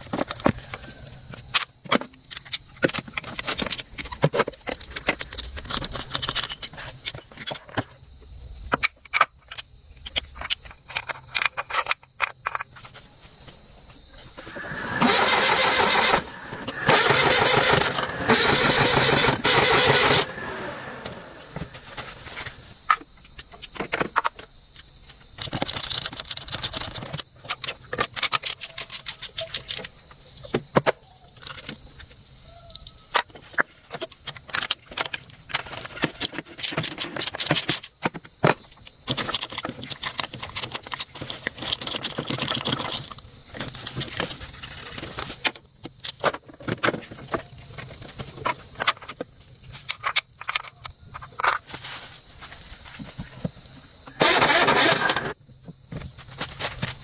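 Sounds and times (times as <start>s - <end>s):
metal tools clinking and rattling: 39.1s - 49.1s.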